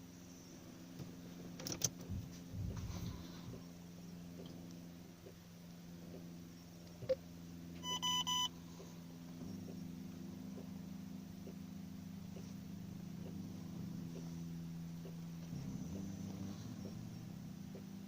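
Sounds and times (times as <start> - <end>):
steady low hum: 0.0 - 18.0
dashboard warning beeps: 7.8 - 8.6.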